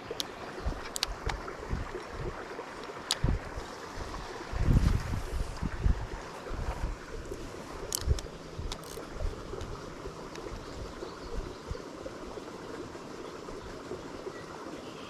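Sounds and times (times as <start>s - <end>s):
water running over waterfall: 0.0s - 15.0s
wind gusts on microphone: 3.2s - 9.8s.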